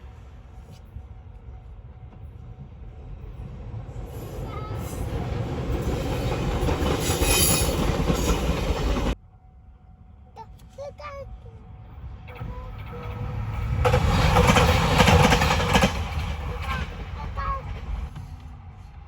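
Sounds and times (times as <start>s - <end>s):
train wheels rumbling on rails: 0.0s - 9.2s, 11.8s - 19.0s
high wheel squeal: 5.8s - 9.2s.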